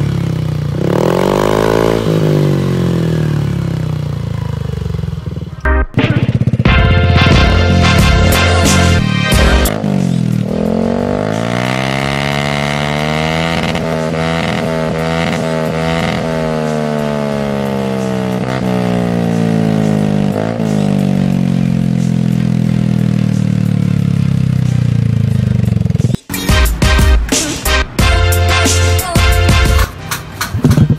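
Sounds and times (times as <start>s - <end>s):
scooter engine revving: 0.0s - 26.3s.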